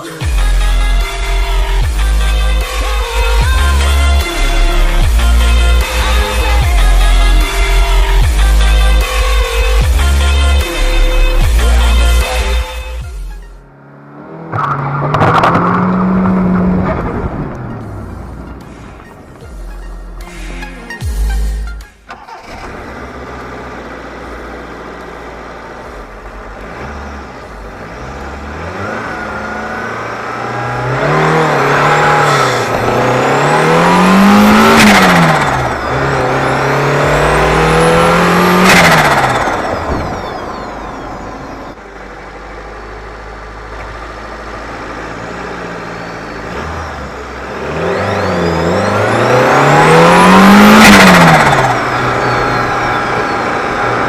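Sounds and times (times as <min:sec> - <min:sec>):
car engine revving: 0:00.0 - 0:54.0
turbo whistle: 0:47.8 - 0:54.0.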